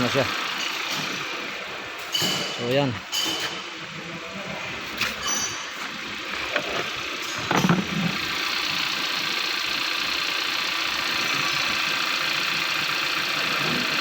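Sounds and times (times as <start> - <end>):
car engine idling: 5.9 - 14.0
loud clatter: 6.6 - 8.3.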